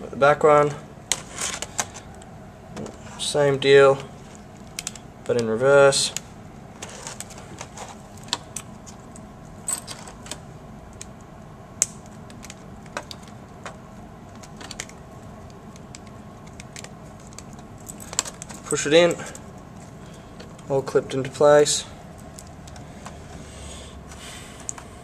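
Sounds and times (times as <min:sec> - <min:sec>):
faint background hum: 0:00.0 - 0:25.0.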